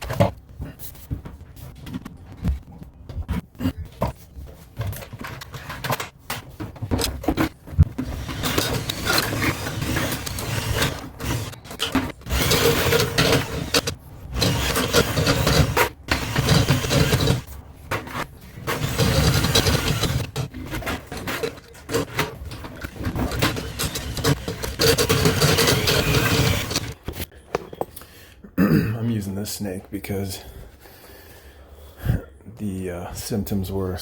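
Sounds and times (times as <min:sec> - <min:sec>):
motorized drain snake running: 0:08.0 - 0:17.5, 0:18.6 - 0:27.0.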